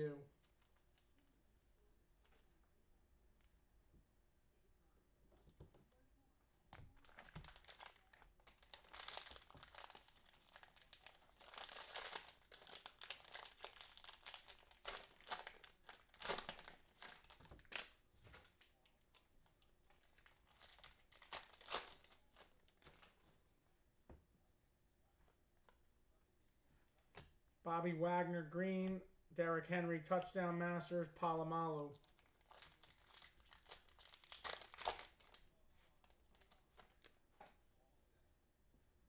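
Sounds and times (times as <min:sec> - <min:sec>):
cellophane wrapper crinkling and tearing: 0:06.8 - 0:23.2, 0:31.9 - 0:37.2.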